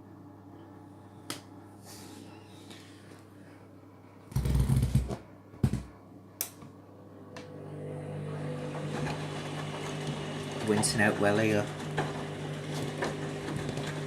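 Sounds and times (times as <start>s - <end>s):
washing machine humming: 6.8s - 14.0s.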